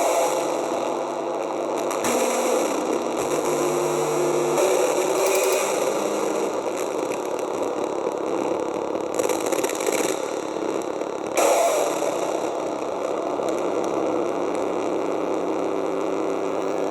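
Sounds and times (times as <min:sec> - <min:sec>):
distorted gritty drone: 0:00.2 - 0:16.9.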